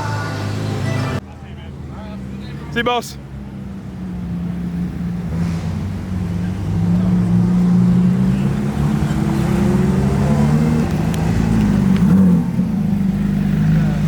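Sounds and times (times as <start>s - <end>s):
sports car engine pulling away: 0.0s - 14.0s.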